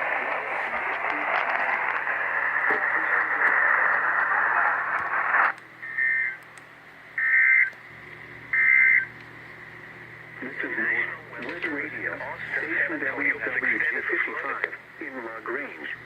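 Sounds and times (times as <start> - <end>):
warbling data bursts: 0.0 - 6.4, 7.2 - 7.7, 8.5 - 9.2
radio static hissing: 0.0 - 16.0.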